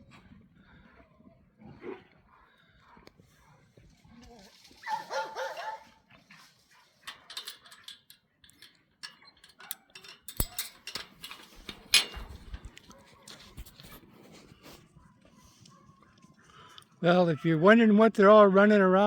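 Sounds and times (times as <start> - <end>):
animal hooves clicking and knocking: 6.2 - 14.6.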